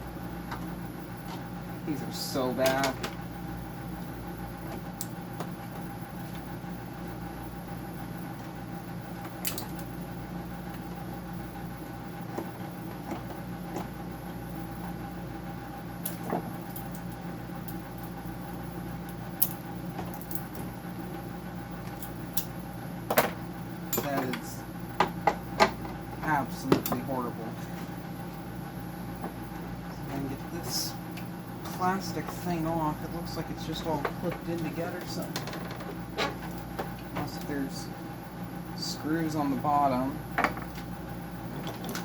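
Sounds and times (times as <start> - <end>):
steady mechanical hum: 0.0 - 42.0
clicks and knocks handling parts: 33.8 - 37.5.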